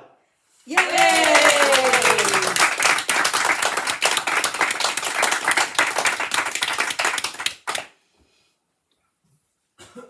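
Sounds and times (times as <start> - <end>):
group of people clapping: 0.7 - 7.9.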